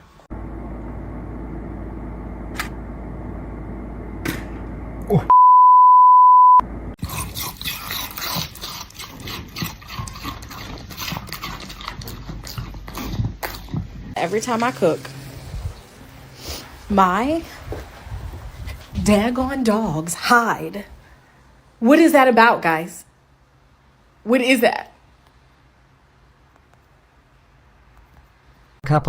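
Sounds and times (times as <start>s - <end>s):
electronic bleep: 5.3s - 6.6s.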